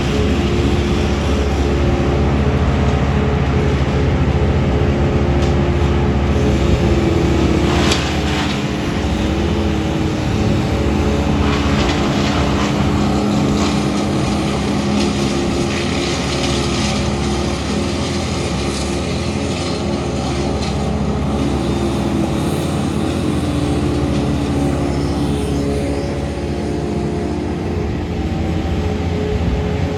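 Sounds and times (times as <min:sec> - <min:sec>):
engine running: 0:00.0 - 0:29.9.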